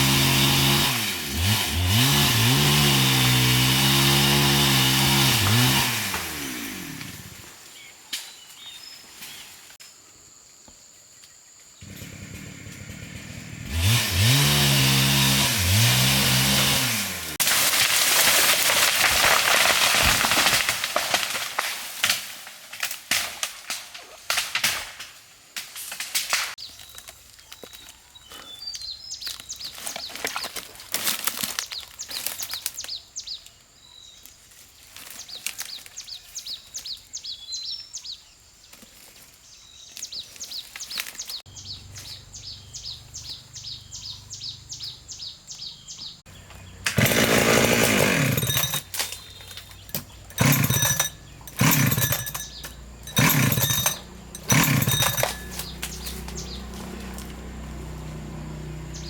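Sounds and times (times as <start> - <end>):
chainsaw running: 0.0 - 7.6, 11.8 - 21.5, 46.6 - 59.0.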